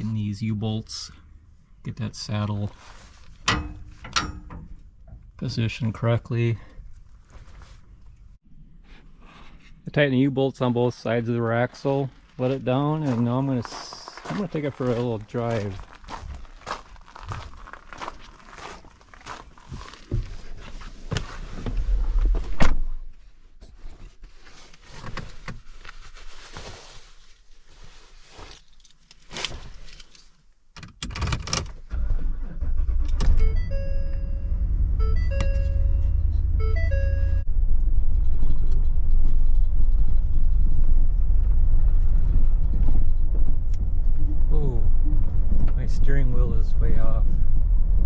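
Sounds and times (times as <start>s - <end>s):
clunks and knocks: 3.4s - 5.4s
pickup engine starting and running: 31.9s - 46.0s
dashboard warning chime: 33.3s - 37.5s.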